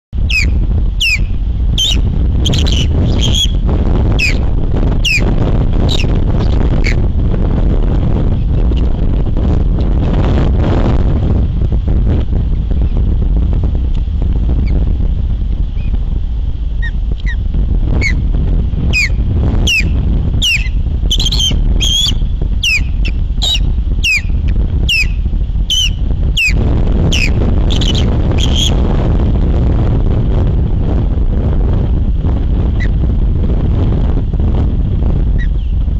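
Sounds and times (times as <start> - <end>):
wind buffeting microphone: 0.1 - 35.9
osprey whistled calls: 0.2 - 3.6, 4.2 - 7.0, 18.9 - 28.8.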